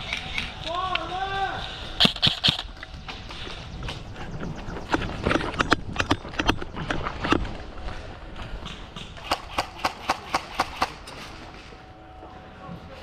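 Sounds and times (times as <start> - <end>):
sharp knocks and clacks: 4.8 - 7.5.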